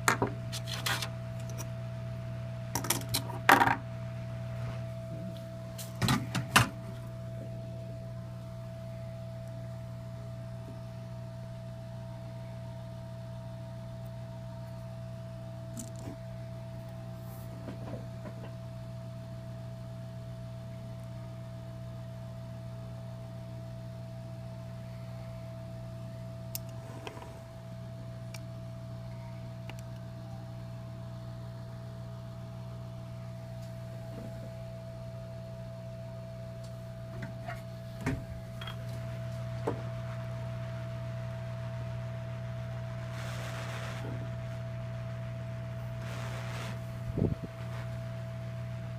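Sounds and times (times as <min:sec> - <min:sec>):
constant higher tone: 0:06.8 - 0:18.2, 0:24.3 - 0:31.1.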